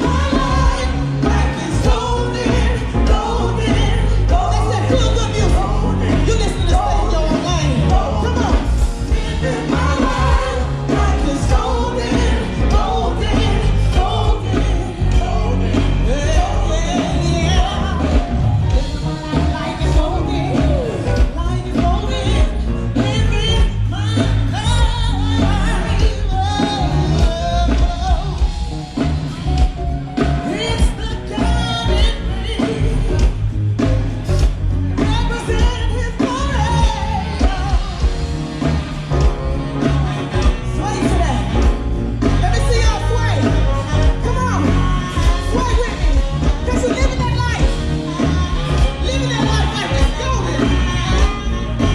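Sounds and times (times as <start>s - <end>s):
person singing: 0.0s - 29.5s
rock and roll band playing: 0.0s - 51.9s.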